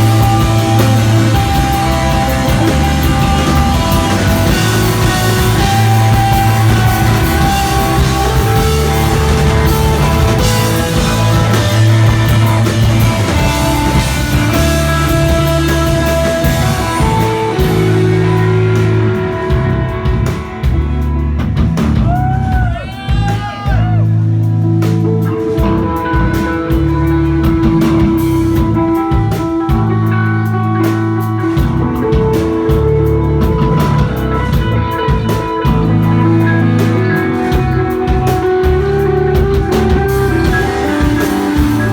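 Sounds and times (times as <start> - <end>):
cymbals: 0.0 - 21.0
bass guitar held notes: 0.0 - 41.9
electric guitar lines: 0.0 - 41.9.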